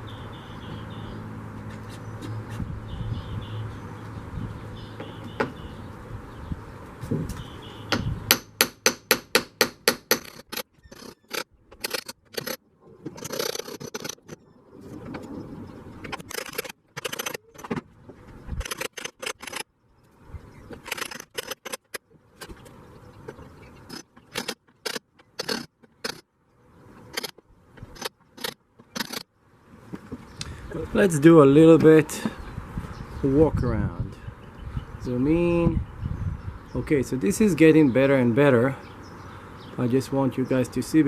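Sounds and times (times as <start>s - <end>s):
metal scraping: 10.1s - 15.4s, 23.8s - 26.2s
sharp metallic clicks and taps: 18.6s - 19.7s, 20.7s - 22.5s, 27.1s - 29.3s.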